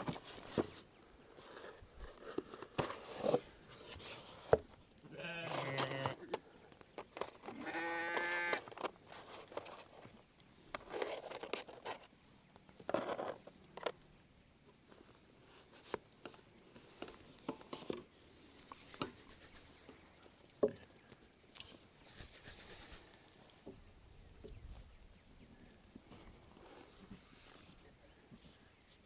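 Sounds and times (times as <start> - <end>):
rustling: 0.0 - 29.0
sheep bleating: 5.1 - 6.2, 7.5 - 8.6.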